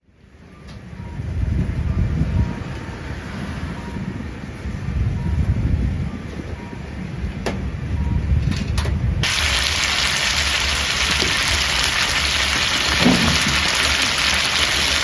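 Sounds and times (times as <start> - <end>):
dumplings sizzling in oiled pan: 9.2 - 15.0
low kitchen rumble: 9.2 - 15.0.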